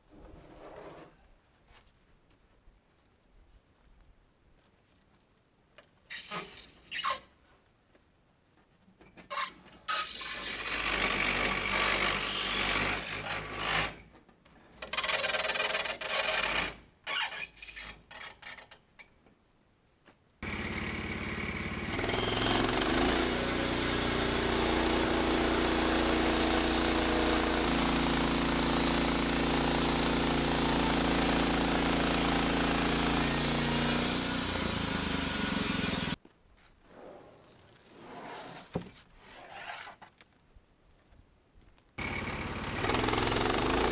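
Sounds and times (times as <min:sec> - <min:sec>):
bandsaw mill sawing log: 0:09.9 - 0:14.0, 0:20.4 - 0:36.2, 0:42.0 - 0:43.9.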